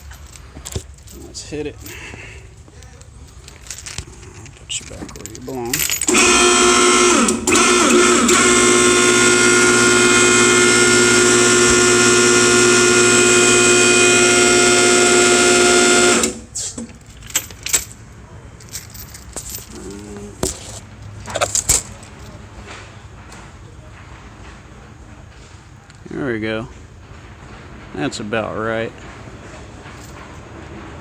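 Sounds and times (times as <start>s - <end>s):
hydraulic pump whining: 3.5s - 17.6s, 19.6s - 21.7s.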